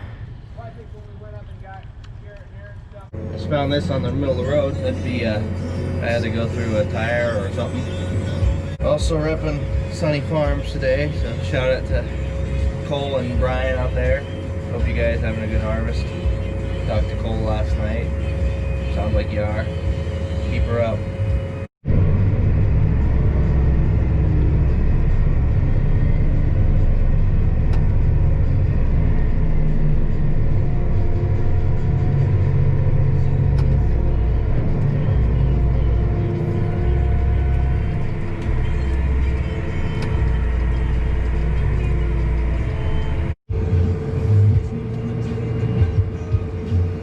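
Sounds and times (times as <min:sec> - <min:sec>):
faint steady tones: 0:00.0 - 0:21.7
vehicle engine droning: 0:00.0 - 0:47.0.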